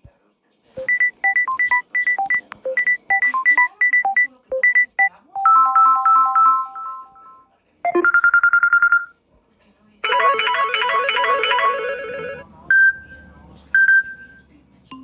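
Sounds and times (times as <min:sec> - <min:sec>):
phone ringtone melody: 0:00.8 - 0:09.1, 0:10.0 - 0:13.1.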